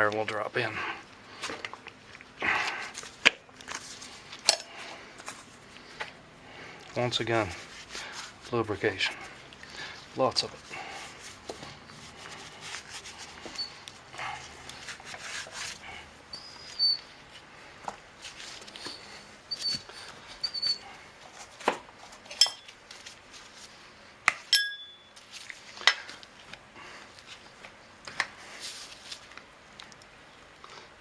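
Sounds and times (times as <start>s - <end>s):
metal clink: 22.4s - 22.7s, 24.5s - 25.1s.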